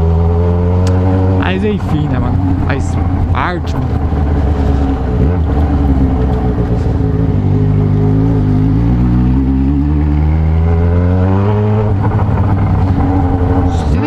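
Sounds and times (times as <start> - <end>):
motorcycle engine accelerating: 0.0 - 14.0.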